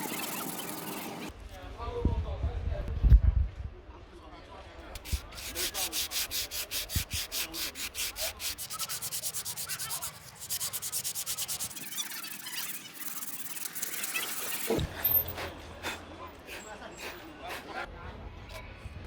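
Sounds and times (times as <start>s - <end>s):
hand scraping strokes: 0.0s - 1.3s, 5.0s - 17.8s.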